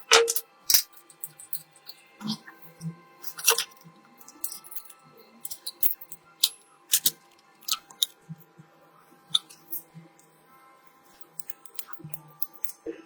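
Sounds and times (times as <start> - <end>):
metal tools clicking on tablet: 0.0 - 2.4, 3.2 - 4.9, 5.5 - 8.2, 9.3 - 9.8, 11.2 - 12.8.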